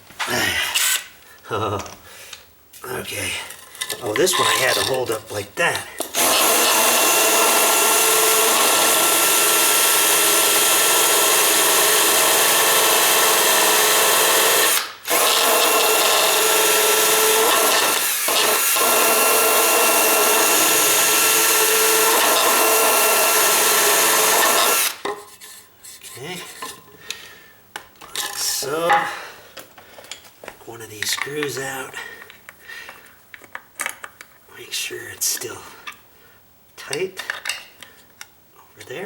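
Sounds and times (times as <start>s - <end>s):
electric drill whine: 6.1s - 25.0s.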